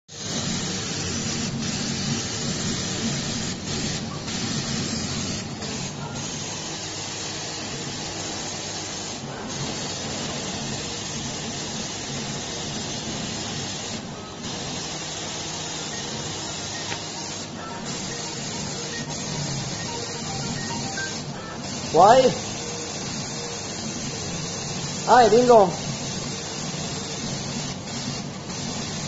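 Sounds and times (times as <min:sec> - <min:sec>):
laser cutter gas hiss: 0:00.1 - 0:29.0.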